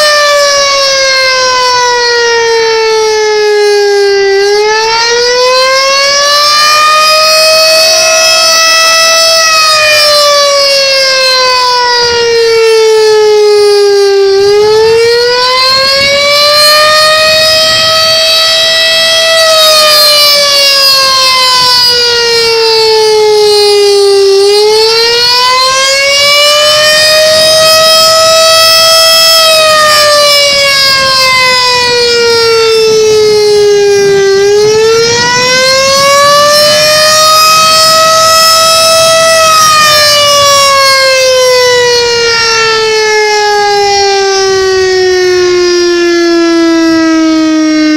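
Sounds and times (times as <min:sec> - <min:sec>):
warning siren wailing: 0:00.0 - 0:47.9.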